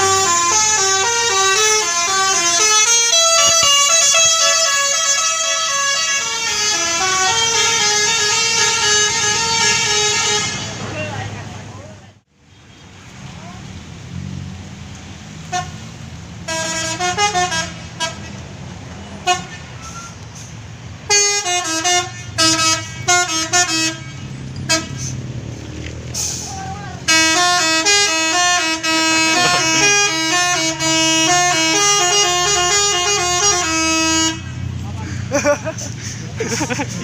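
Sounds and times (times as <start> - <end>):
multi-note air horn melody: 0.0 - 10.8, 16.5 - 18.4, 21.1 - 25.1, 26.2 - 34.6
bus engine rumbling: 0.0 - 37.0.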